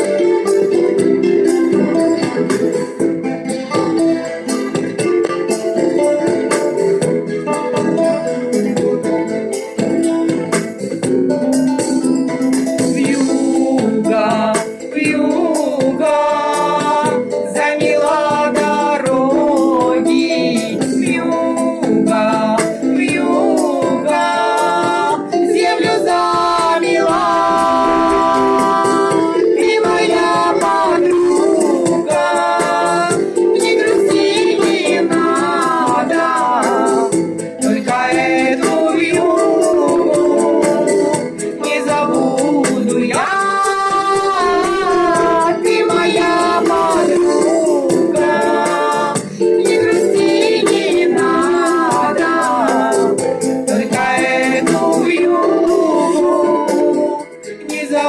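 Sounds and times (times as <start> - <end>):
person singing: 0.0 - 58.0
song with gliding sung melody: 0.0 - 58.0
held accompaniment chord: 26.6 - 32.3.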